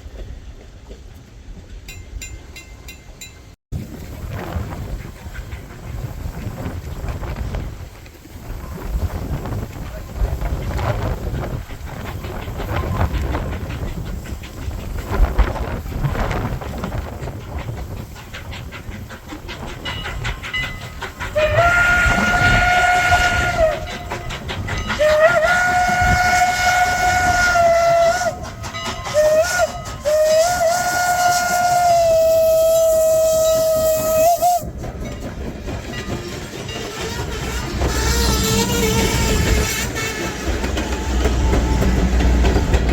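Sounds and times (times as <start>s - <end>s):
rail noise: 0.0s - 42.9s
steam locomotive exhaust chuffs: 0.0s - 42.9s
locomotive chime whistle blasts: 21.4s - 24.1s, 24.9s - 34.7s.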